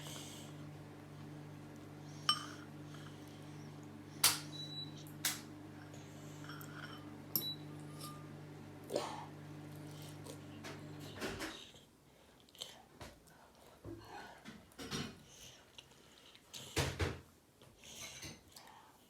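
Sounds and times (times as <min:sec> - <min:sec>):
steady low hum: 0:00.0 - 0:11.3.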